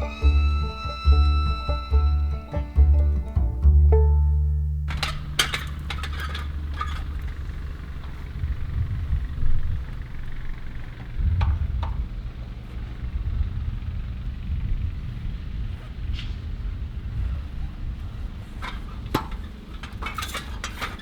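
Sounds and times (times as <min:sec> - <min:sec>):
bricklaying tools clinking: 0:04.9 - 0:08.0
wind buffeting microphone: 0:04.9 - 0:21.0.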